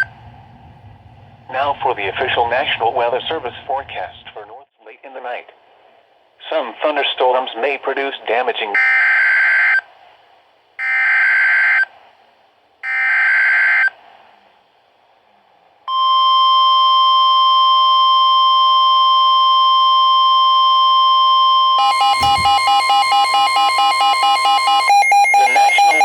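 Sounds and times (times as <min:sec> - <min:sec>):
pulsing alarm tone: 0:00.0 - 0:00.4, 0:20.5 - 0:26.0
steady attention tone: 0:00.0 - 0:04.4, 0:19.8 - 0:26.0
warbling data tones: 0:21.8 - 0:26.0.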